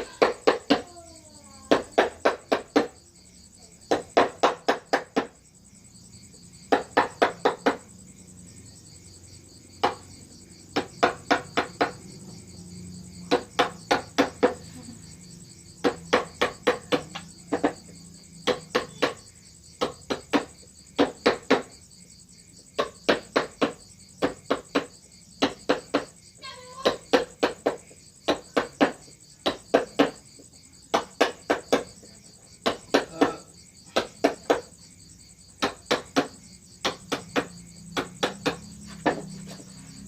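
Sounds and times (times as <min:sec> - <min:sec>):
crickets chirping: 0:00.0 - 0:40.0.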